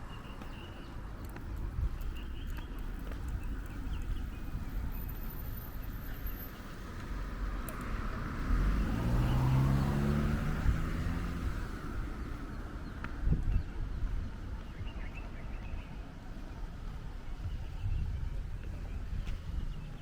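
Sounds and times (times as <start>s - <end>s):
street background: 0.0s - 20.0s
car driving past: 7.2s - 12.4s.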